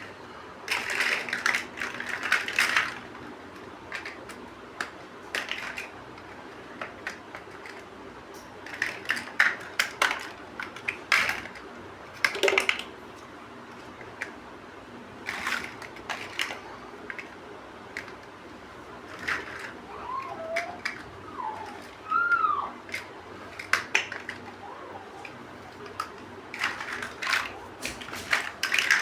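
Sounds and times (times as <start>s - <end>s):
plastic bricks clicking together: 0.7s - 7.9s, 8.6s - 13.0s, 15.3s - 18.3s, 19.1s - 22.0s, 22.8s - 24.6s, 25.2s - 29.0s.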